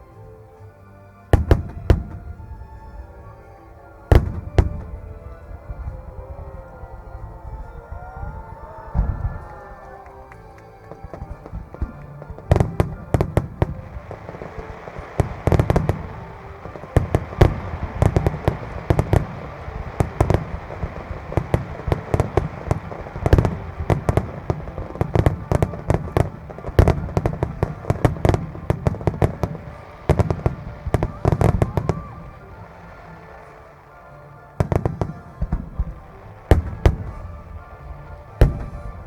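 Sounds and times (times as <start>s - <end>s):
firework shells bursting: 10.2s - 39.0s.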